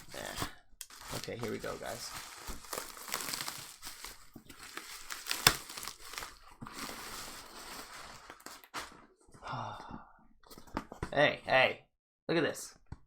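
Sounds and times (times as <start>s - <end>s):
packaging crinkling and rustling: 0.0s - 9.1s.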